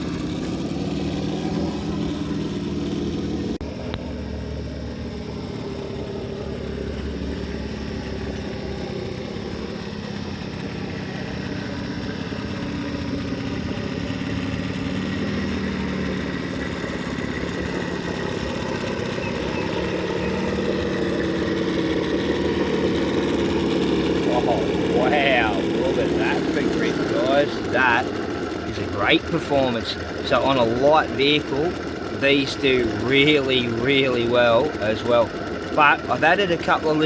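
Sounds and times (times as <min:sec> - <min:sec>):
toy car motor whirring: 0:06.5 - 0:37.0.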